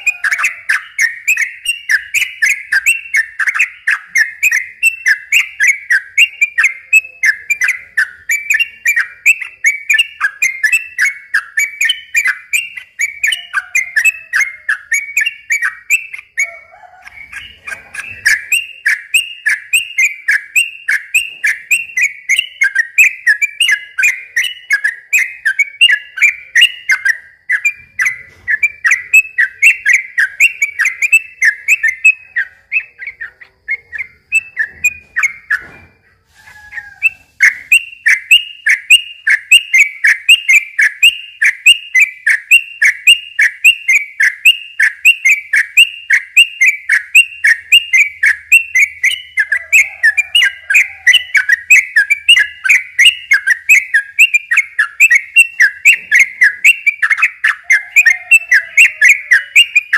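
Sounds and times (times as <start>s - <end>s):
bulbul singing whistled notes: 0.0s - 59.9s.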